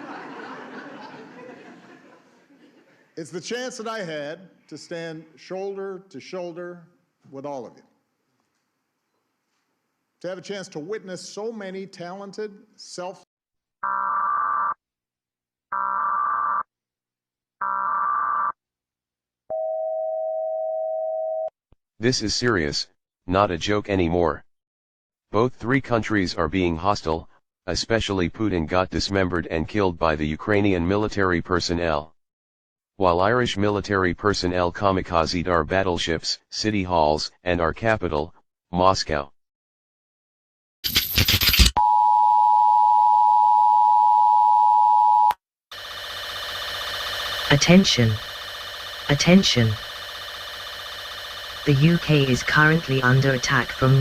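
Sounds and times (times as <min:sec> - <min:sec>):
harsh electronic data bursts: 0:45.7 - 0:54.0
steady electronic tone: 0:45.7 - 0:54.0.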